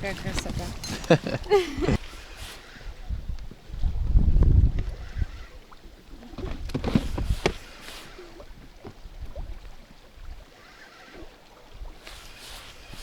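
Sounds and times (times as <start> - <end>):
knocks and clatter in boat: 0.0 - 2.0, 4.2 - 5.2, 6.2 - 9.6
rustling: 6.3 - 8.3, 12.0 - 13.0.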